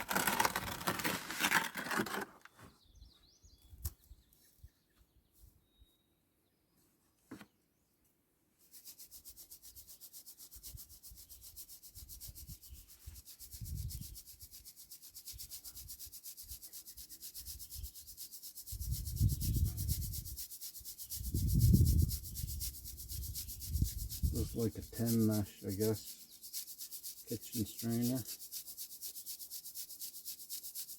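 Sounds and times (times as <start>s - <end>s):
grit scraping over wire mesh: 0.0s - 2.6s, 19.2s - 30.9s.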